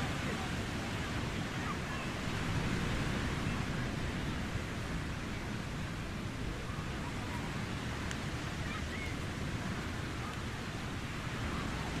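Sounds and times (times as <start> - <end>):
distant children's voices: 0.0 - 4.0, 6.4 - 12.0
waves washing on beach: 0.0 - 12.0.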